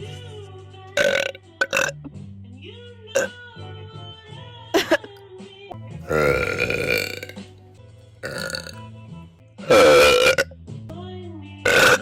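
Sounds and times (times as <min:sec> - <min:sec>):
background music: 0:00.0 - 0:12.0
woman burping: 0:06.0 - 0:07.4, 0:08.2 - 0:08.8, 0:11.7 - 0:12.0.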